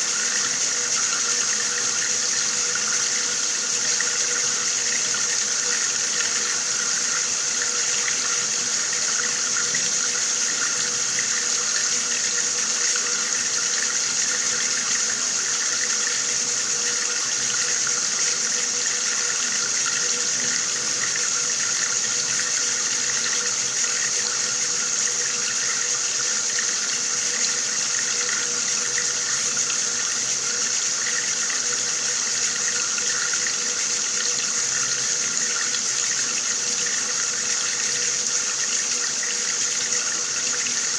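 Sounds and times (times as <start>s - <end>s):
water running from a tap: 0.0s - 40.9s.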